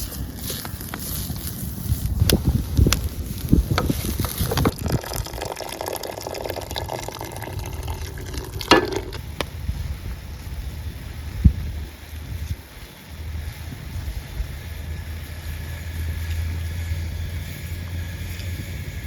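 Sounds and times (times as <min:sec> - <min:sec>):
wind on microphone: 0:01.7 - 0:12.8
stirring or scraping: 0:07.8 - 0:09.2
loud utensil clatter: 0:08.1 - 0:09.2
utensils knocking and clicking: 0:08.6 - 0:09.2.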